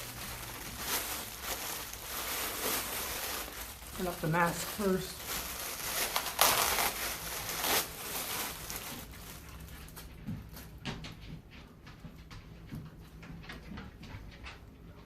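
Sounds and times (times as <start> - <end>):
packaging rustling and crinkling: 0.0 - 10.8.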